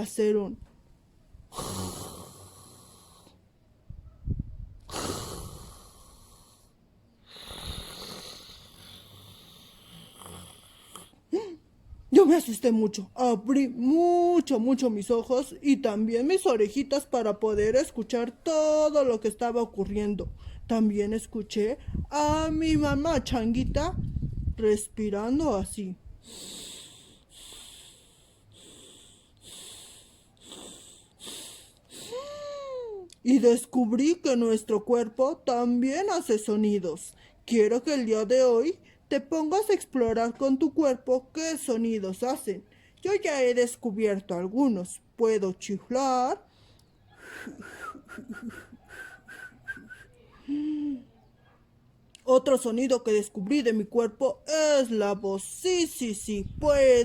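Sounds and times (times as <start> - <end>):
person snoring: 1.5 - 3.4, 4.9 - 6.7, 7.3 - 11.2, 26.2 - 32.4
person breathing: 4.9 - 11.6, 26.2 - 32.4, 50.3 - 51.0.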